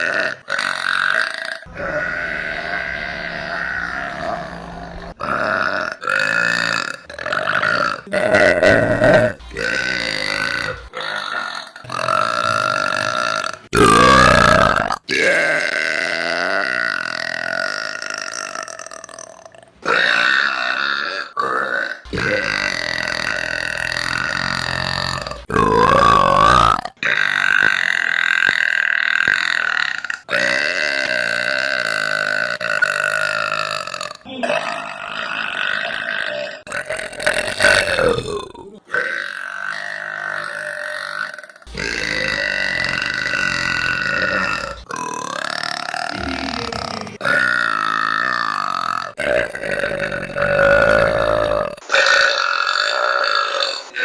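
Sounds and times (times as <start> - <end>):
woman burping: 5.0 - 17.2, 21.8 - 39.0, 40.9 - 53.8.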